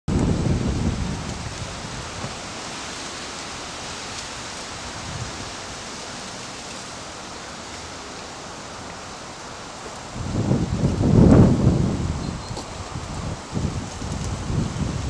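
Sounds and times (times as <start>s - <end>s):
wind buffeting microphone: 0.1s - 2.9s, 3.8s - 5.8s, 10.0s - 15.0s
microphone hiss: 0.1s - 15.0s.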